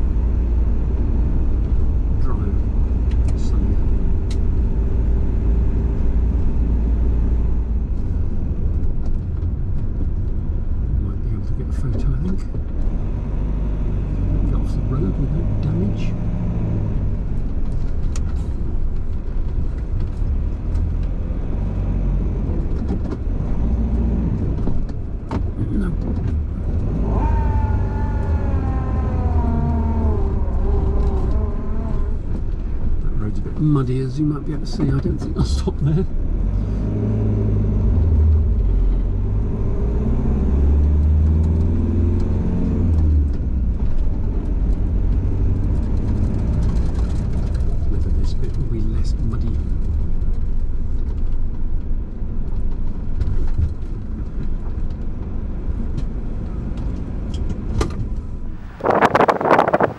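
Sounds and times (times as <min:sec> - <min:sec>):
van engine and road rumble: 0:00.0 - 0:59.9
tyre noise: 0:57.9 - 0:59.9.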